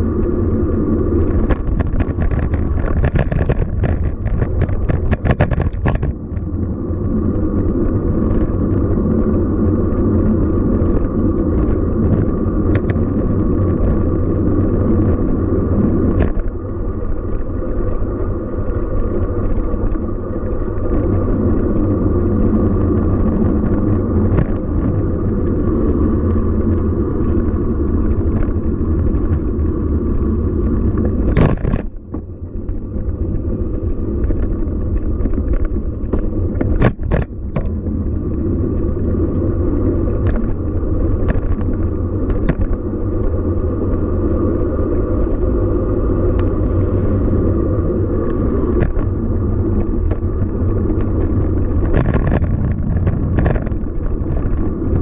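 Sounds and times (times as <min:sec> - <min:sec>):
bicycle tyres on pavement: 0:00.0 - 0:55.0
wind on microphone: 0:00.0 - 0:55.0.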